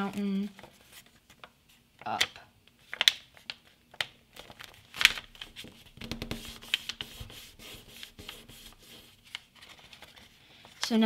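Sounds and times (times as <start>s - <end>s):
paper rustling and crackling: 2.8s - 10.9s.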